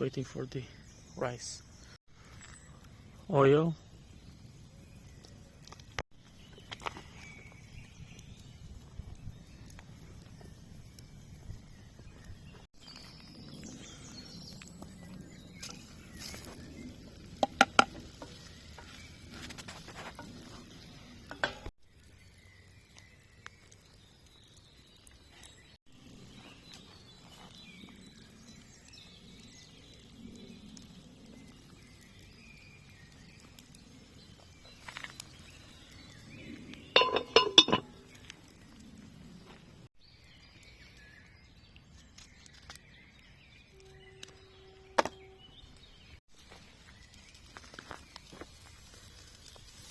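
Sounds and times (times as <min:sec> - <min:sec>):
metal cookware clinking: 0:37.0 - 0:38.0.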